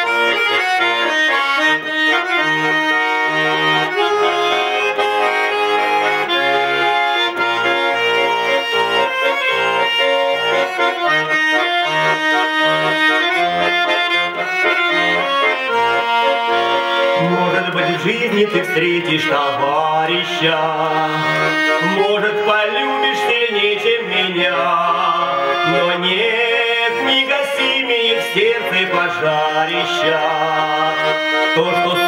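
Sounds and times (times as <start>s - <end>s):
button accordion melody: 0.0s - 32.0s.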